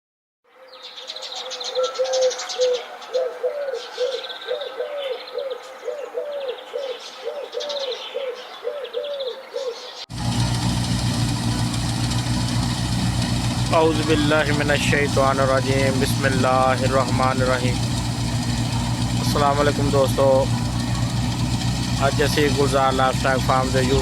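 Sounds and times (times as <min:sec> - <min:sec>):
birds calling: 0:00.6 - 0:24.0
engine running: 0:10.1 - 0:24.0.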